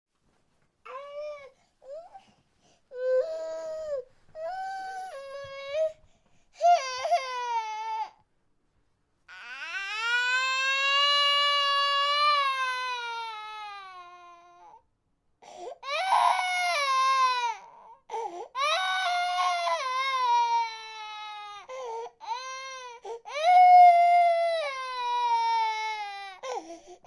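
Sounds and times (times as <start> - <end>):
baby crying: 0.9 - 2.2, 6.6 - 8.2, 9.3 - 14.8, 15.8 - 26.7.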